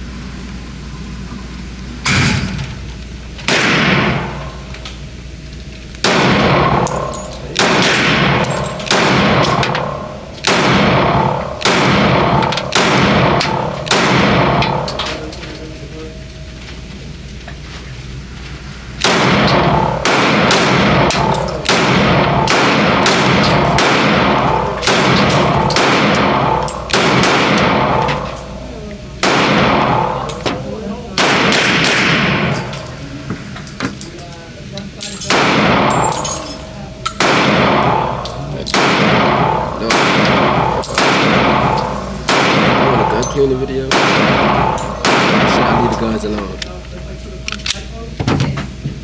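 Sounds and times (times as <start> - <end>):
gunshots with ringing echo: 3.5 - 4.7, 6.0 - 15.3, 19.0 - 33.1, 35.0 - 46.3.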